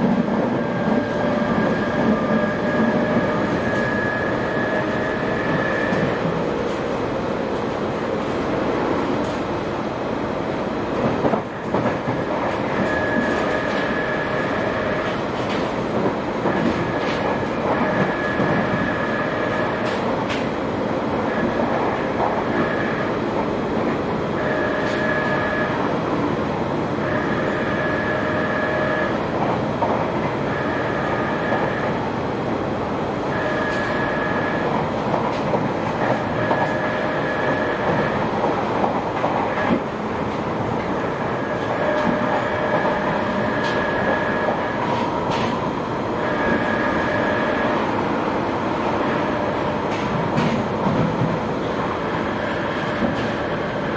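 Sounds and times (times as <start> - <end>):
train rumbling: 0.0 - 53.9
rail-joint clicks: 11.0 - 20.6, 33.6 - 45.8, 49.8 - 53.5.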